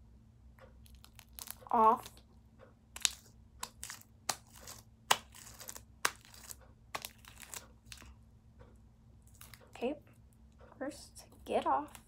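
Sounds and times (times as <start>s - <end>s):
slime crackling and snapping: 0.8s - 2.2s, 2.9s - 8.1s.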